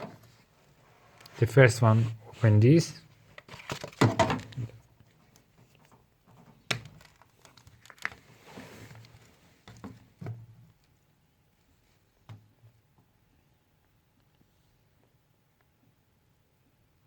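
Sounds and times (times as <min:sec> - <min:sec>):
plastic cover knocks and clicks: 0:03.6 - 0:04.7, 0:06.3 - 0:07.2.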